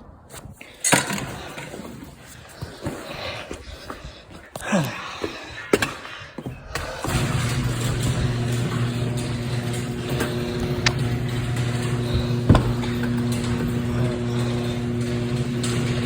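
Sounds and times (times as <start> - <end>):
low mechanical hum: 7.0 - 16.0.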